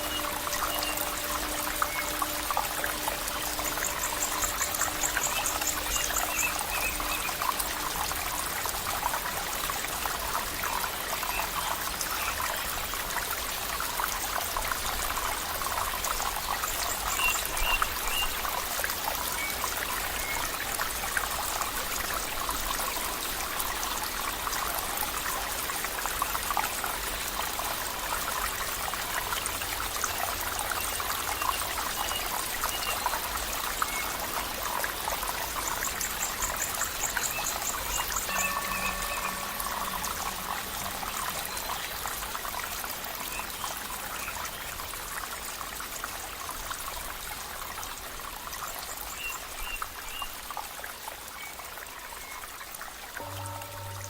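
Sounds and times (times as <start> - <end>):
stream water trickling: 0.0 - 54.0
faint high chirps: 37.0 - 41.8, 53.2 - 54.0.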